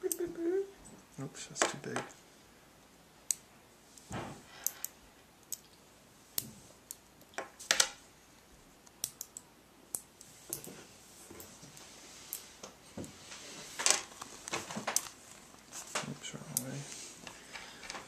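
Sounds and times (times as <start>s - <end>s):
magnet balls clicking together: 4.6s - 5.8s, 8.8s - 10.7s.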